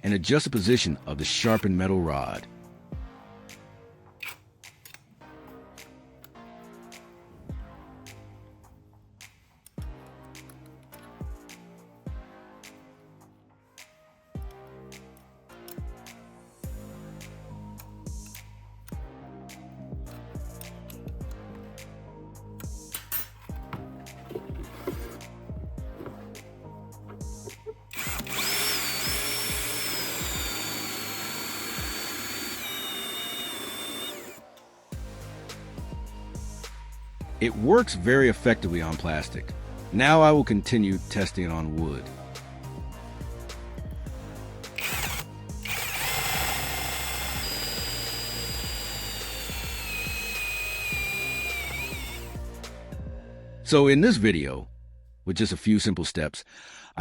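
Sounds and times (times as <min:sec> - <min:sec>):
electric drill whining: 0:27.4 - 0:34.5, 0:44.8 - 0:52.5
hole saw cutting plastic hiss: 0:27.4 - 0:34.6, 0:44.7 - 0:52.4.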